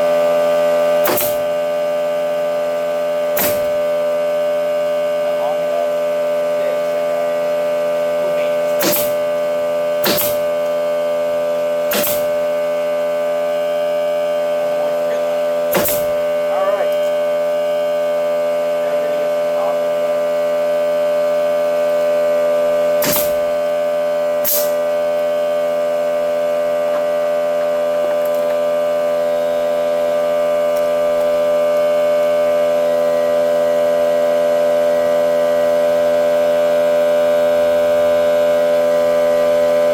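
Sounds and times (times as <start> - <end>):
air compressor humming: 0.0 - 39.9
pneumatic stapler shots: 0.9 - 1.8, 3.3 - 4.1, 8.7 - 10.8, 11.8 - 12.6, 15.7 - 16.3, 22.9 - 23.7, 24.4 - 24.9.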